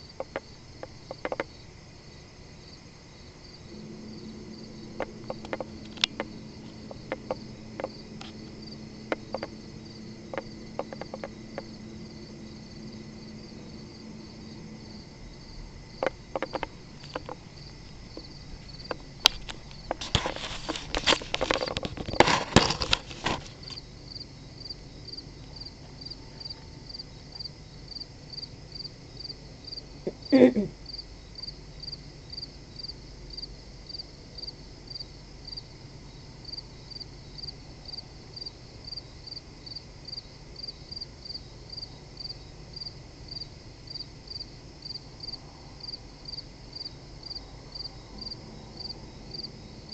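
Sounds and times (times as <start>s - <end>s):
crickets chirping: 0.0s - 49.9s
low steady hum: 0.0s - 49.9s
sharp clicks and crackles: 16.0s - 17.4s, 18.2s - 23.8s.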